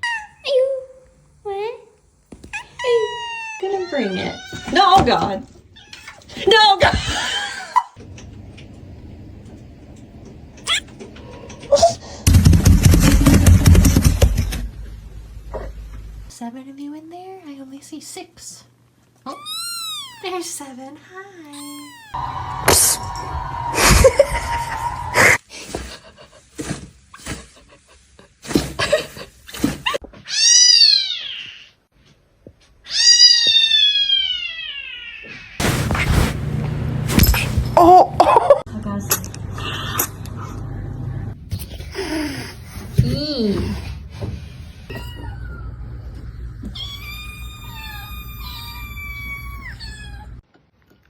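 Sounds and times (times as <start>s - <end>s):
kitten meowing: 19.3s - 20.4s, 21.5s - 22.2s, 46.7s - 50.4s.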